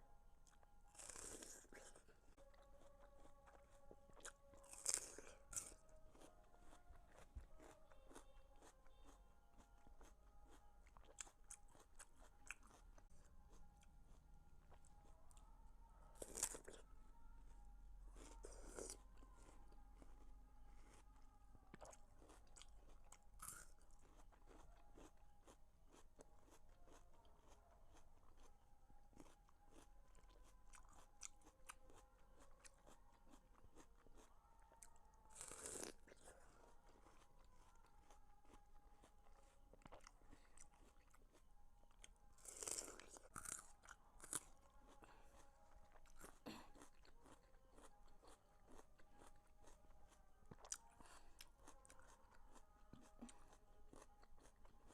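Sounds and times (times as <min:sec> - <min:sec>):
crunchy bites: 0:00.9 - 0:02.0, 0:04.2 - 0:09.2, 0:32.8 - 0:36.3, 0:42.4 - 0:45.4
wet chewing: 0:29.2 - 0:54.9.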